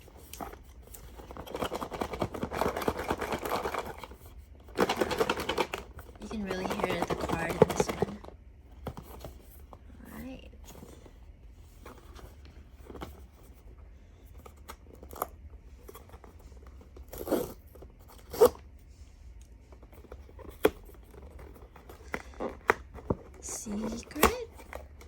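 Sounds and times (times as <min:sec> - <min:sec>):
packaging rustling and tearing: 0:00.0 - 0:08.3.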